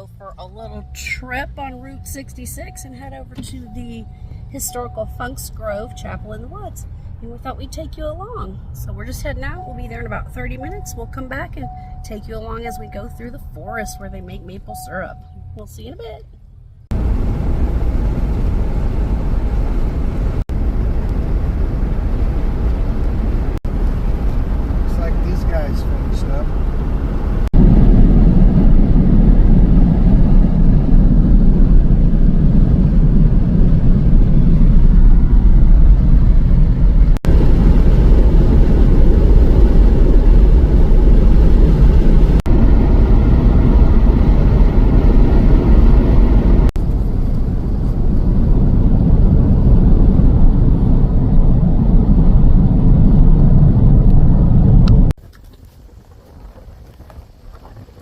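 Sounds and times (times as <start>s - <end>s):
road and wind noise: 0.0s - 58.0s.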